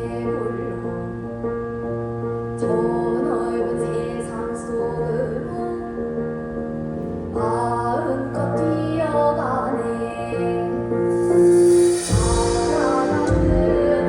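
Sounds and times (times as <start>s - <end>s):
traditional music sustained notes: 9.8s - 14.0s
hissy shimmer: 11.0s - 14.0s.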